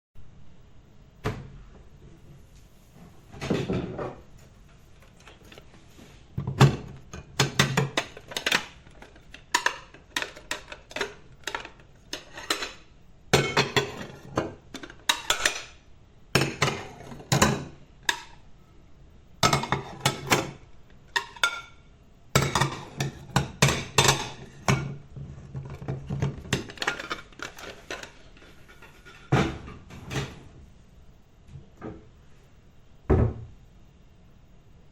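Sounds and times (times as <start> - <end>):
ceramic plates clinking: 6.7 - 15.8, 16.4 - 18.4, 19.4 - 21.8, 22.4 - 25.0, 25.6 - 29.6.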